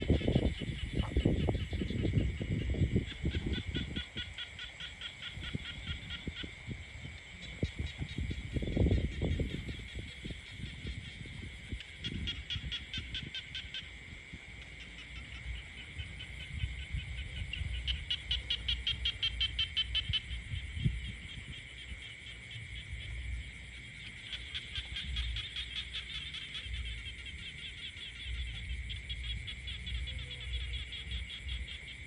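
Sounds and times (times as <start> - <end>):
low rumble: 0.0 - 4.1
frog pulsed croaking: 0.0 - 32.0
high-pitched frog chorus: 0.0 - 32.0.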